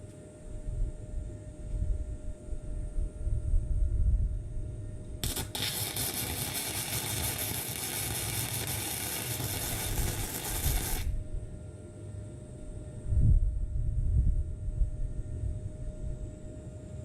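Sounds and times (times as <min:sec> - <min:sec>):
welder arc crackling: 0:05.2 - 0:11.2.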